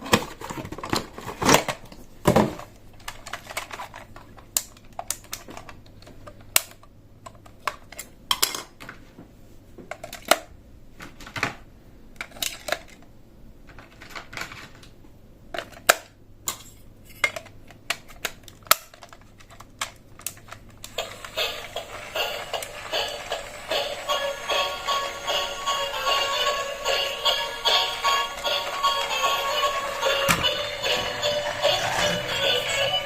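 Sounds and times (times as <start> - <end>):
music: 20.9 - 33.0.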